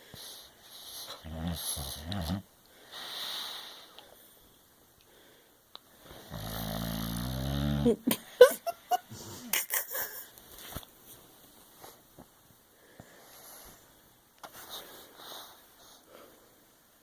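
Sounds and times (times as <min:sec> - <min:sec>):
dog snoring: 0:00.7 - 0:03.8, 0:06.2 - 0:08.0.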